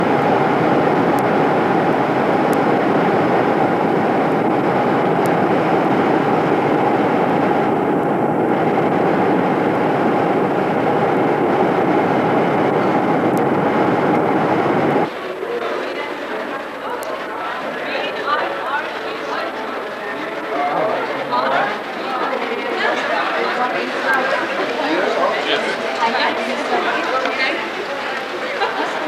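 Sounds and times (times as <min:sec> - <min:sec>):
loud steady rushing noise: 0:00.0 - 0:29.0.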